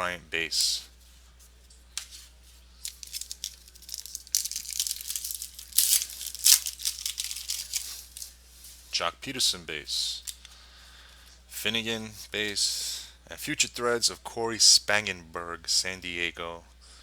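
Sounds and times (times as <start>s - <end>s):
wrapper tearing and crinkling: 2.8s - 8.4s.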